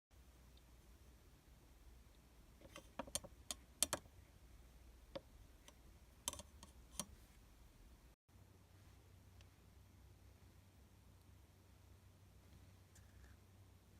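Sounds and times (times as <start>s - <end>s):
faint low hum: 0.1s - 13.9s
light clicks and taps: 2.1s - 4.1s, 5.1s - 7.2s.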